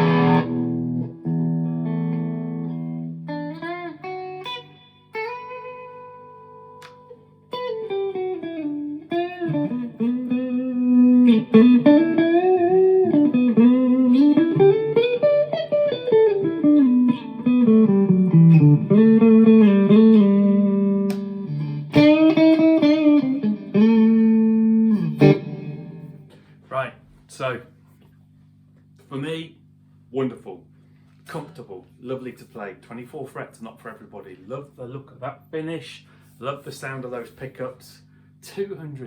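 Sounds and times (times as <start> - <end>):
electric guitar lead line: 0.0 - 26.4.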